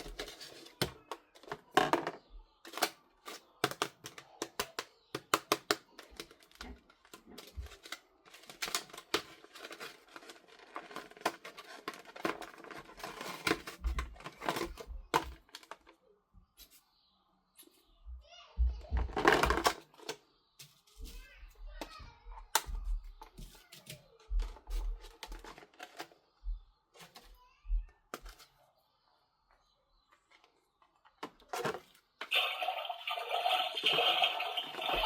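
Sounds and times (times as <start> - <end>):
plastic parts clicking: 0.0 - 16.0, 19.0 - 20.8, 23.4 - 26.2
packaging rustling and crinkling: 6.2 - 15.9.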